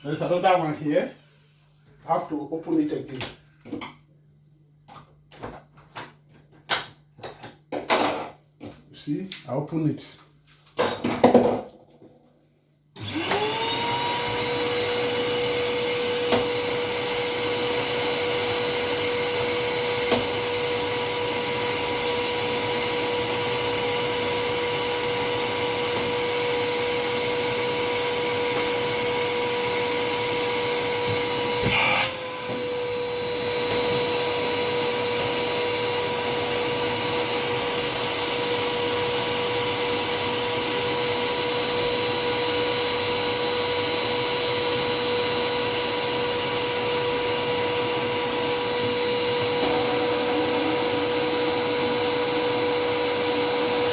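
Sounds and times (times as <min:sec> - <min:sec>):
vacuum cleaner whining: 0:13.0 - 0:53.9.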